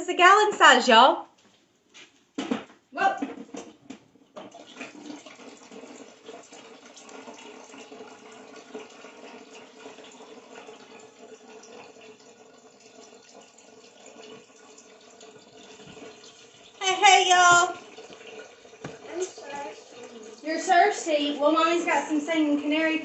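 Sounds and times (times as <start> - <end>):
water running into plastic jug: 2.4 - 23.0.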